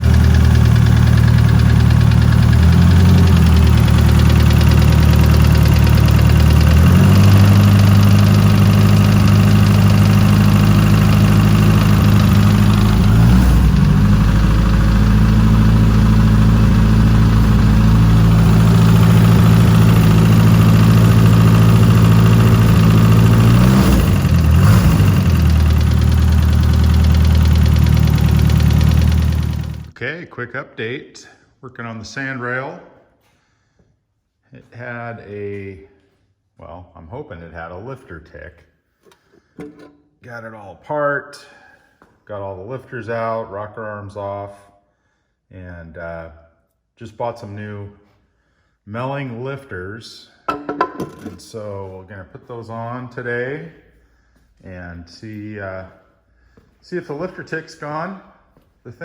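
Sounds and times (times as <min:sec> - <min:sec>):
car engine idling: 0:00.0 - 0:30.0
engine ticking: 0:00.0 - 0:30.0.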